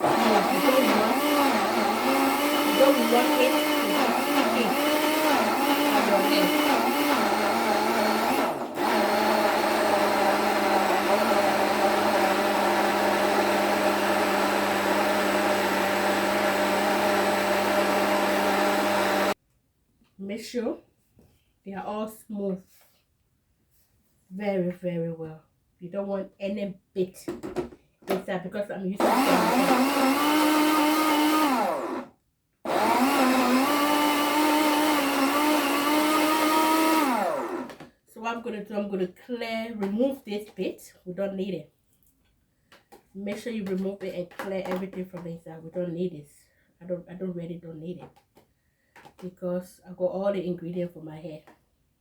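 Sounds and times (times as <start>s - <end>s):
electric blender running: 0.0s - 19.4s, 29.0s - 32.1s, 32.7s - 37.8s.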